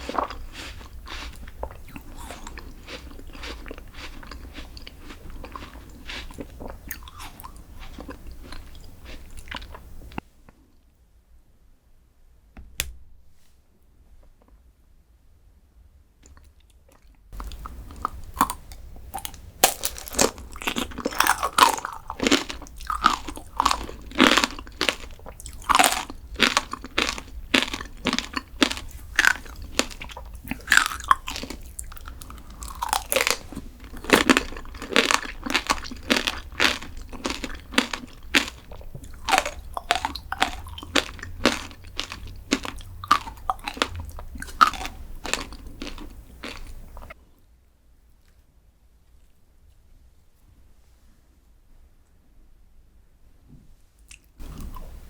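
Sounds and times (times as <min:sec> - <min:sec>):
crunchy dessert chewing: 0:00.0 - 0:10.2, 0:16.2 - 0:47.2, 0:54.1 - 0:55.0.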